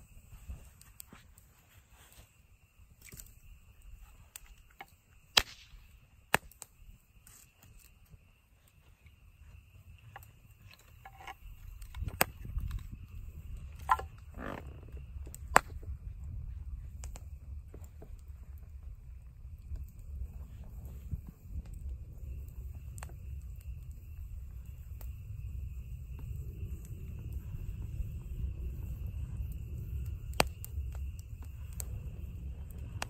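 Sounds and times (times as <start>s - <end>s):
campfire crackling and popping: 0.0s - 33.0s.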